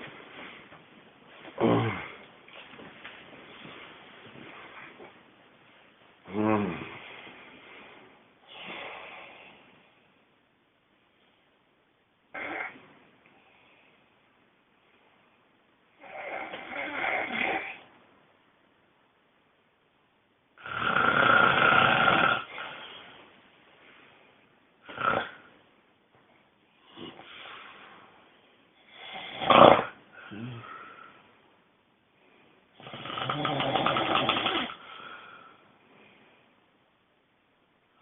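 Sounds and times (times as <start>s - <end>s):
person snoring loudly: 1.6s - 2.2s, 6.3s - 7.0s, 20.6s - 22.8s, 24.9s - 25.4s, 28.9s - 30.8s, 32.8s - 34.8s.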